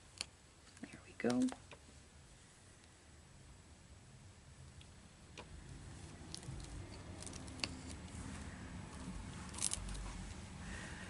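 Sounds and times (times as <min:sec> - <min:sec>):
yarn and canvas rustling: 0:05.7 - 0:10.5.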